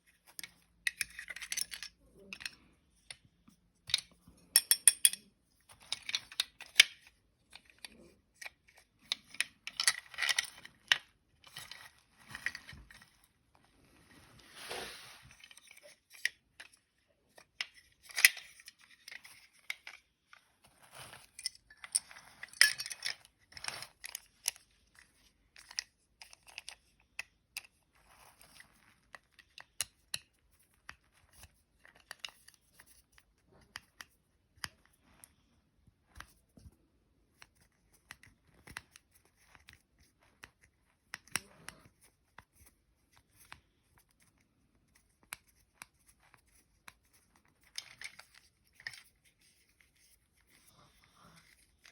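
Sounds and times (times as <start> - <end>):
plastic toys clicking and tapping: 0.1 - 13.1, 21.3 - 27.8, 37.4 - 51.9
scraping and rustling: 9.8 - 16.7, 17.3 - 24.2
rubbing scrape: 14.1 - 15.4.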